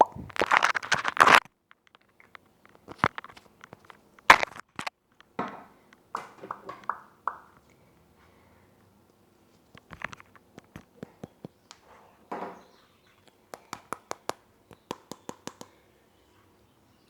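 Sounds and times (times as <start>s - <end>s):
tapping on headset microphone: 4.2s - 7.6s, 13.5s - 15.8s.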